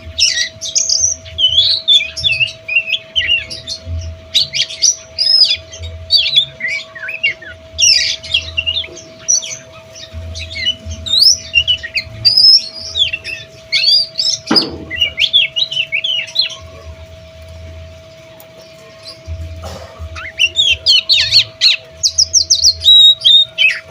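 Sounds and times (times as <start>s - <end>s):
bird singing varied song: 0.0s - 23.9s
thump: 14.5s - 15.0s.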